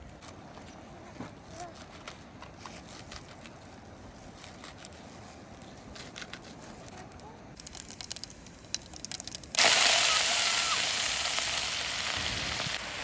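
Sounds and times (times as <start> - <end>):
small crackles and clicks: 5.6 - 9.6
food sizzling in hot oil: 9.5 - 13.0.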